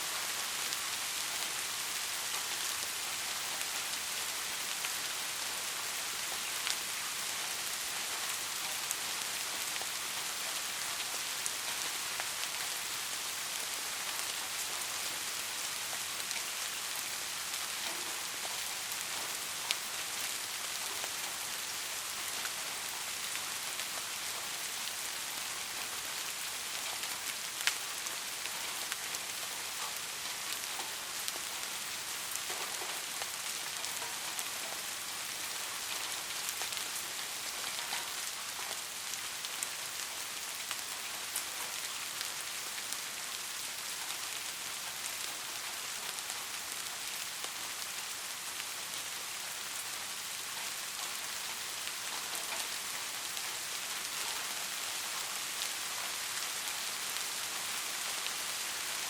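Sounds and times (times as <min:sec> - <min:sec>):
steady rain falling: 0:00.0 - 0:59.0.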